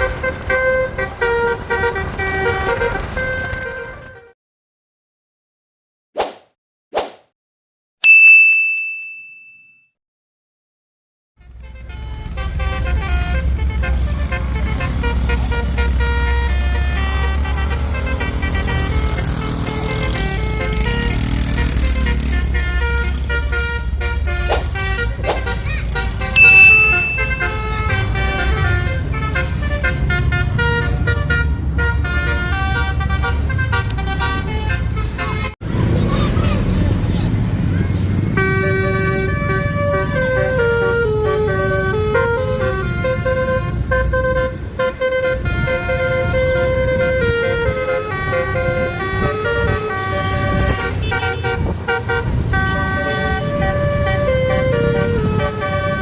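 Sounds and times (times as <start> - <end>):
bus horn playing a melody: 0.0 - 4.4, 11.4 - 35.6, 38.2 - 56.0
quick whooshes: 6.2 - 7.3
ringing ding: 8.0 - 9.9, 26.4 - 27.6.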